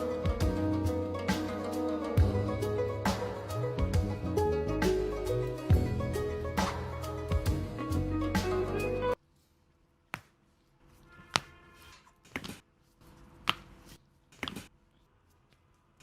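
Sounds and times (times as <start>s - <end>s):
background music: 0.0s - 9.2s.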